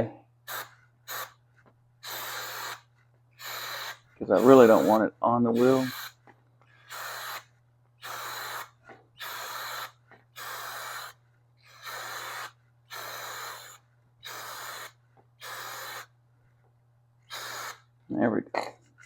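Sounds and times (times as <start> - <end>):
aerosol spray hissing: 0.5 - 1.3, 2.0 - 2.8, 3.4 - 5.0, 5.6 - 6.2, 8.0 - 11.2, 11.8 - 16.1.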